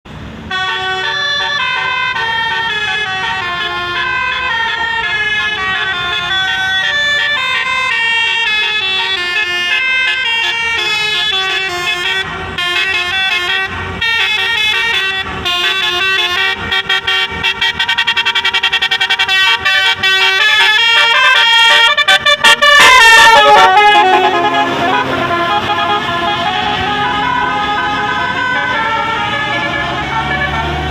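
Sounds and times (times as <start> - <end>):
multi-tone bus horn tune: 0.4 - 30.9.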